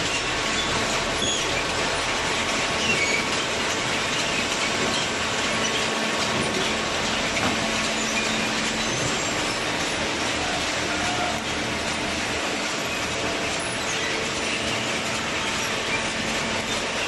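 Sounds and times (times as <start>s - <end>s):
machinery running: 0.0s - 17.0s
high metallic squeaks: 6.5s - 10.0s.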